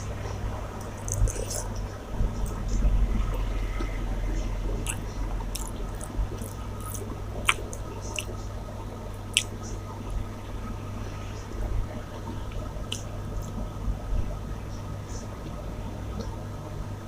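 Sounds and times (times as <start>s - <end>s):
steady low hum: 0.0s - 17.0s
wet chewing and mouth smacking: 0.8s - 1.8s, 4.7s - 8.4s, 9.2s - 9.8s.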